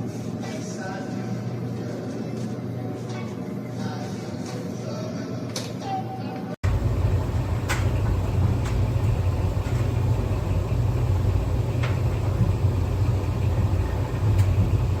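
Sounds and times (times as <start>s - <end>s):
clothes dryer humming: 6.6s - 15.0s.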